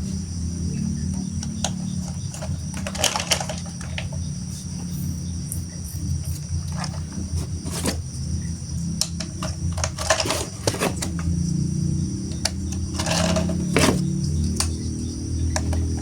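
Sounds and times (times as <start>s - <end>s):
plastic toy pieces clicking: 1.4s - 4.2s, 12.4s - 13.9s.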